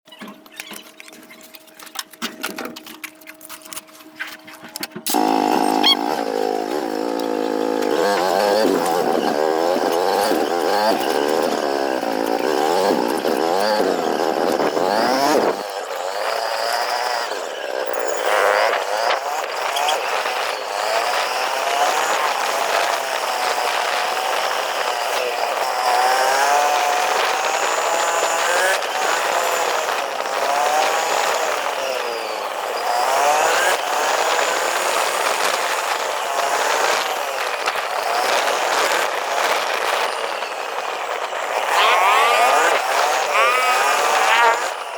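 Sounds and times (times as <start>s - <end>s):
small vehicle engine revving: 5.0s - 44.9s
road noise: 31.2s - 44.9s.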